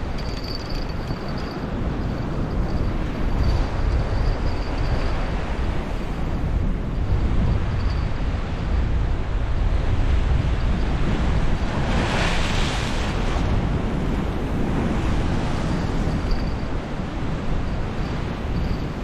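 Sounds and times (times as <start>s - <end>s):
wind buffeting microphone: 0.0s - 19.0s
surf on rocks: 10.2s - 19.0s.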